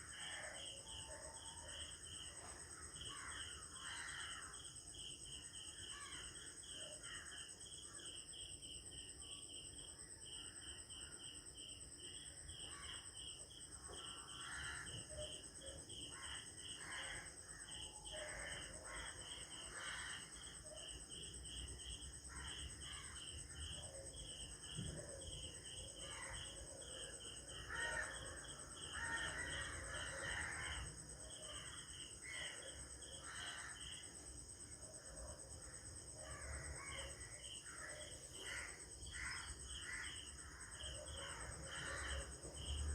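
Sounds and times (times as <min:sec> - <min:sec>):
high insect drone: 0:00.0 - 0:42.9
insects chirping: 0:00.0 - 0:42.9
crows cawing: 0:03.1 - 0:04.6, 0:14.1 - 0:15.1, 0:27.6 - 0:30.9.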